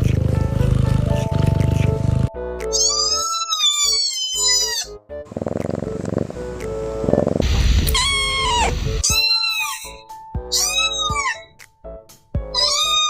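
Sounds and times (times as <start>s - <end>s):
background music: 0.0s - 13.0s
kitten meowing: 2.7s - 4.9s, 7.8s - 11.5s, 12.5s - 13.0s.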